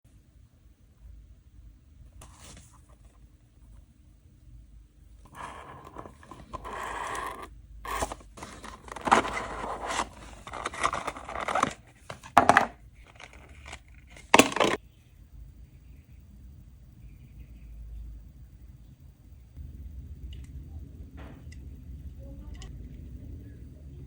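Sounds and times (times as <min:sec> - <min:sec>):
cardboard and plastic rustling: 0:02.2 - 0:03.2, 0:05.3 - 0:14.8.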